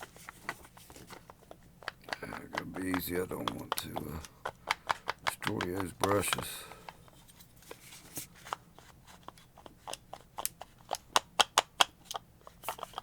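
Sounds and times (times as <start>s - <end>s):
clicks and taps of tool on grinder parts: 1.2s - 7.1s, 9.3s - 13.0s.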